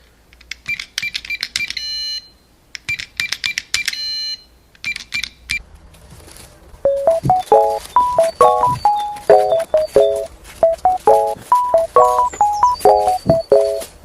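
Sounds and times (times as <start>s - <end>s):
electronic ringing tone: 6.9s - 13.9s
keypad clicks with beeps: 6.9s - 13.9s.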